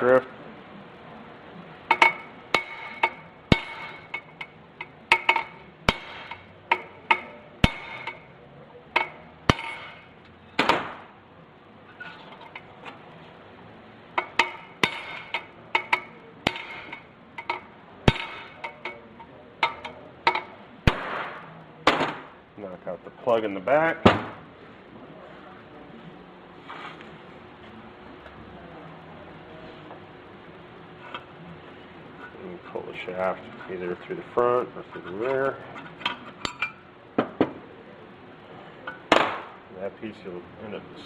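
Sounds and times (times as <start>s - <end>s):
hammer striking steel punch: 1.9s - 4.2s, 5.1s - 8.2s, 9.0s - 11.1s, 14.2s - 19.0s, 19.6s - 22.3s.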